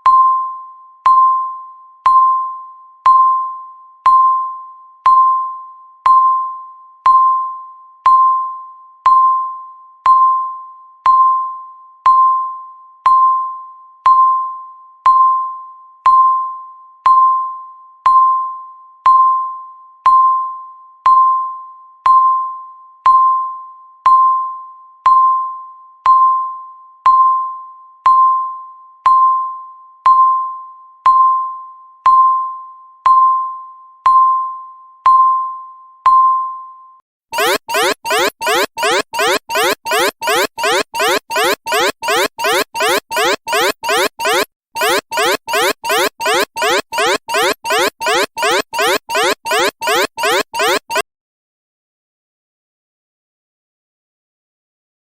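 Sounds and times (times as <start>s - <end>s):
timer chime dings: 37.4s - 51.0s.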